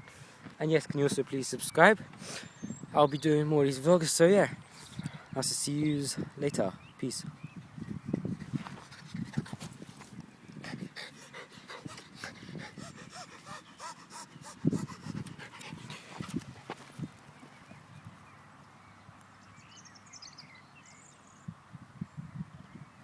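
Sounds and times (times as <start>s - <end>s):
dog panting and snuffling: 8.2s - 17.6s.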